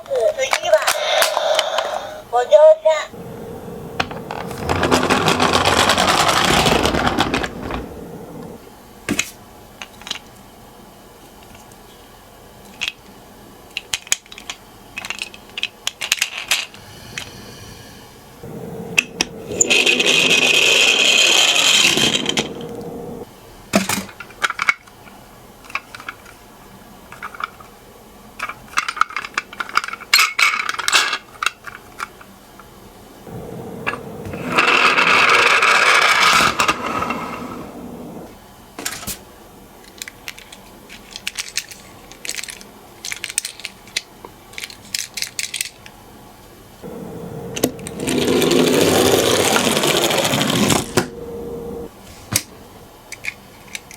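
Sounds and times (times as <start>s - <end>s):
toy cars rolling with rattling rumble: 4.0s - 8.6s, 19.0s - 23.2s, 33.4s - 38.3s, 47.6s - 51.1s
small clicks and clatters: 39.8s - 46.0s.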